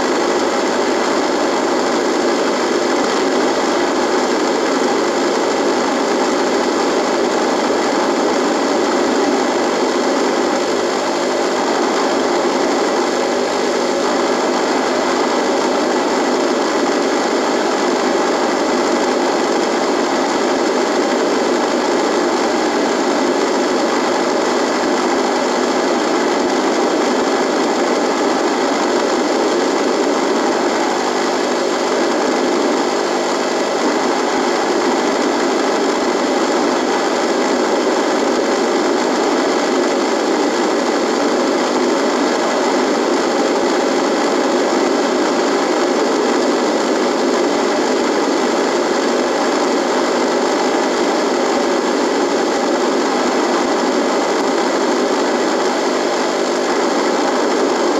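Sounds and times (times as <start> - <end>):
radio static buzz: 0.0 - 57.9.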